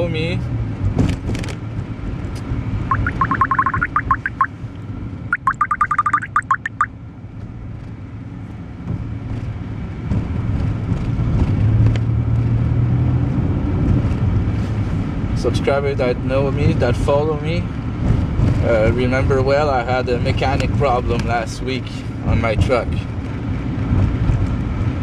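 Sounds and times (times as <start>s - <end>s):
truck engine and road noise: 0.0s - 25.0s
rapid high rising chirps: 2.9s - 4.5s, 5.4s - 6.9s.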